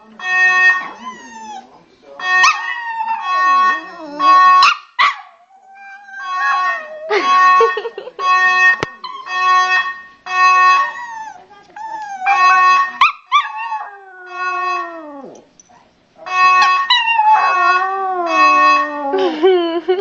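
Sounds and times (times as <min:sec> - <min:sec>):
dog howling: 0:00.9 - 0:01.7, 0:02.6 - 0:04.6, 0:13.4 - 0:15.4, 0:16.9 - 0:19.2
fire alarm beeping: 0:02.2 - 0:04.7, 0:06.2 - 0:11.2, 0:12.2 - 0:13.0, 0:16.2 - 0:19.0.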